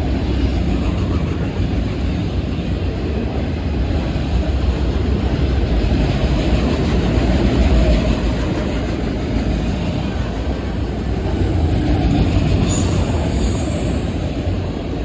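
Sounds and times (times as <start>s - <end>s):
freight train wheels rumbling: 0.0s - 15.0s
high wheel squeal: 9.9s - 14.7s.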